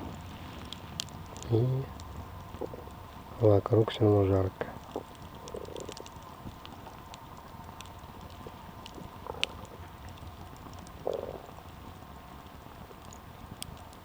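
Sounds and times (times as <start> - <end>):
campfire crackling: 0.0 - 14.0
fire pops: 0.0 - 14.0
low hiss: 0.0 - 14.0.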